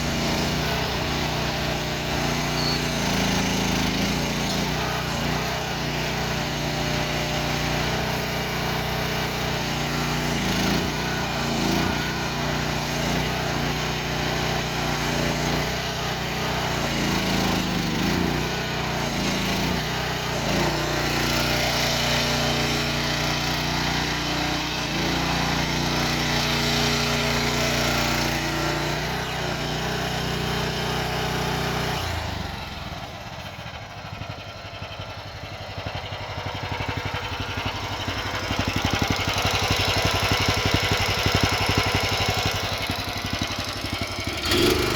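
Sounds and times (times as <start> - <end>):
small excavator engine revving: 0.0 - 44.9.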